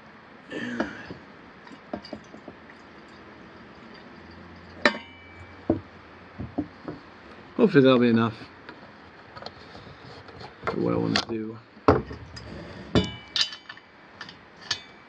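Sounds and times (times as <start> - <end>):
sharp ringing metal clink: 4.8 - 5.7.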